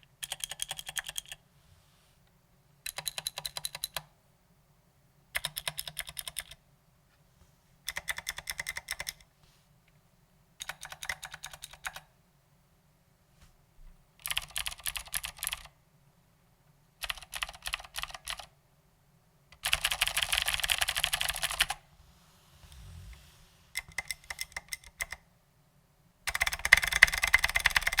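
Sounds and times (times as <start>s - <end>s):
clicky mechanical keyboard typing: 0.2s - 1.4s, 2.8s - 4.1s, 5.4s - 6.6s, 7.9s - 9.2s, 10.6s - 12.1s, 14.2s - 15.7s, 17.0s - 18.5s, 19.6s - 21.8s, 23.8s - 25.2s, 26.3s - 28.0s.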